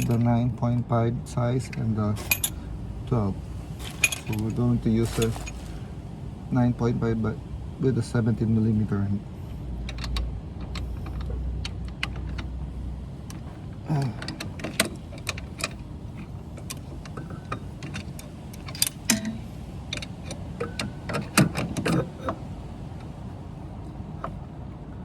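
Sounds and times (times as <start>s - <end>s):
metallic clicks of hand tools: 16.6s - 22.1s.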